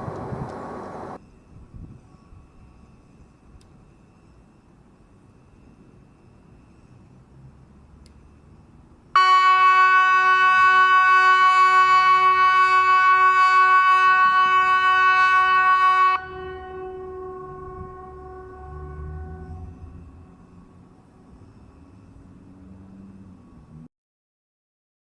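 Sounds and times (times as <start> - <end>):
electronic warning siren blast: 9.2 - 22.8.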